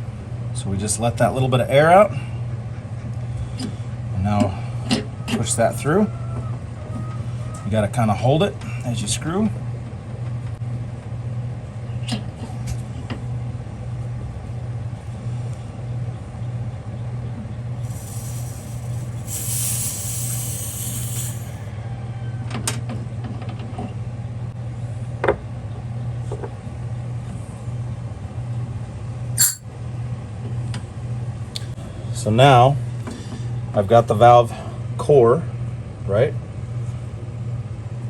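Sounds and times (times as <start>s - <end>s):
steady low hum: 17.6s - 21.7s
refrigerant hissing: 17.8s - 21.7s
sharp metallic tool clicks: 29.4s - 29.6s.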